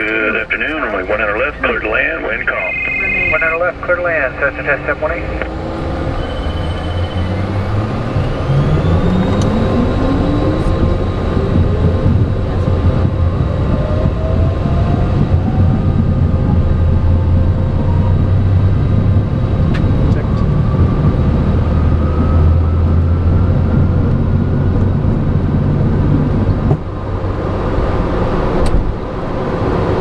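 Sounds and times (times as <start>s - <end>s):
jet engines spooling up: 0.0s - 19.0s.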